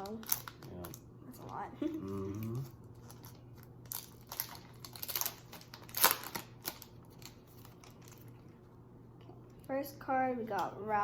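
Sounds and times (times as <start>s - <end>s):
foil wrapper crinkling and tearing: 0.0s - 8.6s.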